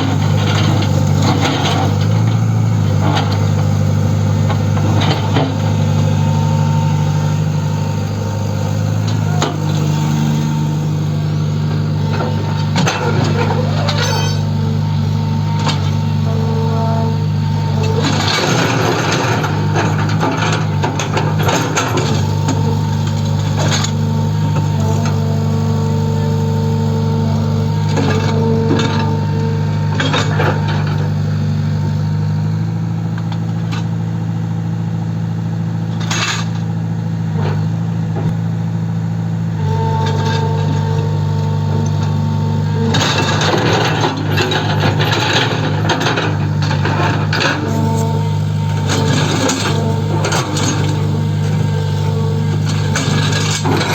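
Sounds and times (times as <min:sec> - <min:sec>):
excavator diesel engine running: 0:00.0 - 0:53.9
metallic clanks and knocks: 0:11.3 - 0:14.6.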